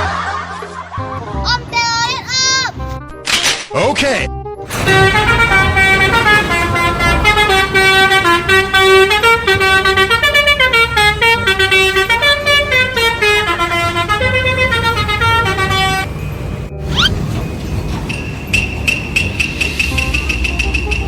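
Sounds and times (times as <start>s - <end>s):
bus horns playing melody: 4.7s - 21.0s
low engine rumble: 4.7s - 21.0s.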